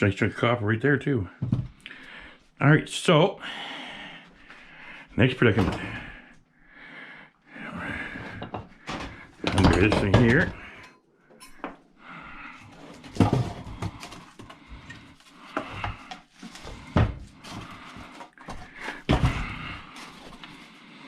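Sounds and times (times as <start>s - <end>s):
handling noises: 7.9s - 10.9s.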